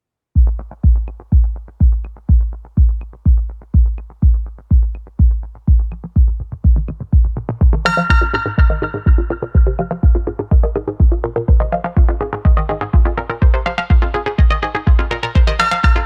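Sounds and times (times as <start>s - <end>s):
electronic dance music: 0.4s - 16.0s
synth chord: 7.8s - 16.0s.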